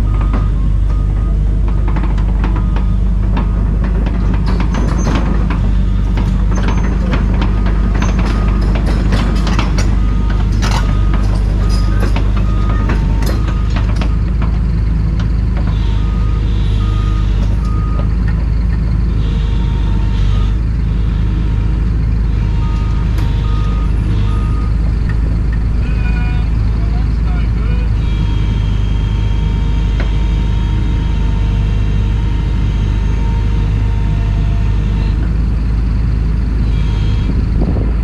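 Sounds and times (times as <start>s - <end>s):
travel alarm beeping: 0.0s - 14.2s, 15.9s - 18.1s, 22.4s - 25.2s, 36.7s - 37.7s
diesel engine running: 0.0s - 38.0s
metallic clanks and knocks: 0.1s - 16.0s.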